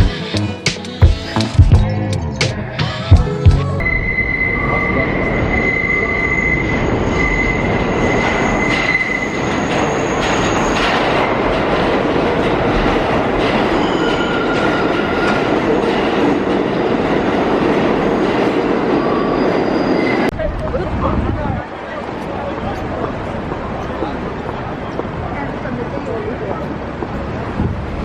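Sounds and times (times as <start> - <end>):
subway train wheels rumbling: 3.6 - 28.0
high-pitched wheel squeals: 3.8 - 11.4, 13.7 - 15.4, 19.0 - 20.3.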